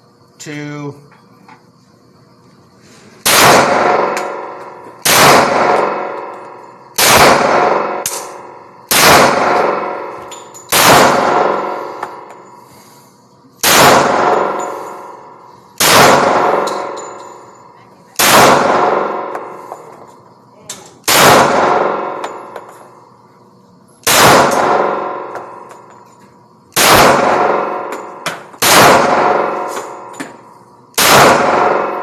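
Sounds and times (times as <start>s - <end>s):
pistol shots ringing out: 3.2s - 12.4s, 13.6s - 17.5s, 18.2s - 19.6s, 20.9s - 22.7s, 24.0s - 25.9s, 26.7s - 32.0s.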